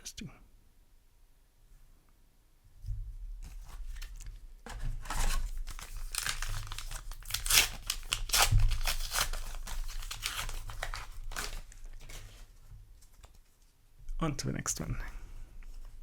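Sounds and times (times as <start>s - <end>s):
foil wrapper tearing and crinkling: 3.4s - 12.6s.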